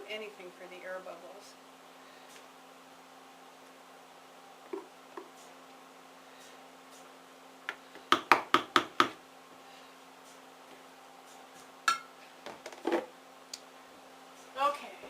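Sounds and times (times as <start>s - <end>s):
soap mold knocking on counter: 8.1s - 9.2s.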